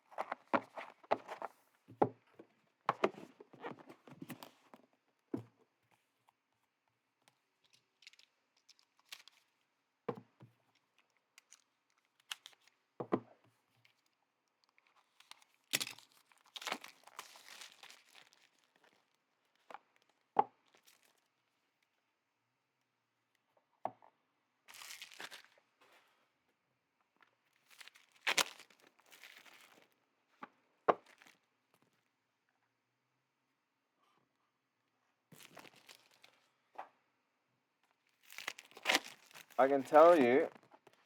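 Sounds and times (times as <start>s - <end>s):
packaging tearing and crinkling: 38.3s - 40.2s.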